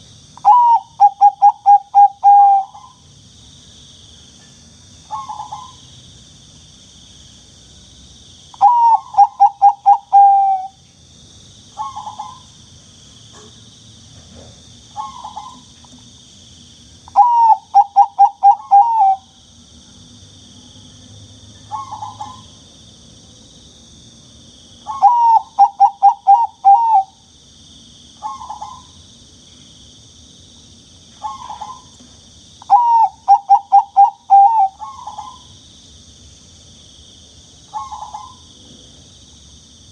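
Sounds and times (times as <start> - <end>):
dove cooing: 0.4 - 3.0, 8.6 - 10.8, 17.2 - 19.3, 24.9 - 27.2, 32.7 - 35.4, 37.7 - 38.4.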